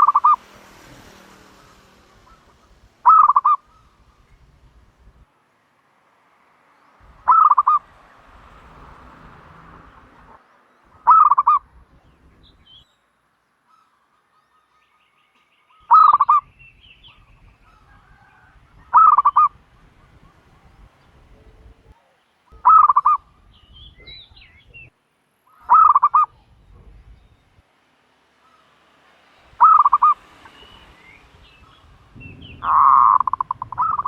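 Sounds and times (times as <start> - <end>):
turtle dove cooing: 0.0 - 5.2, 7.0 - 12.6, 15.9 - 24.9, 25.5 - 27.6, 29.6 - 30.6, 31.6 - 34.0
faint small bird chirps: 20.2 - 24.9.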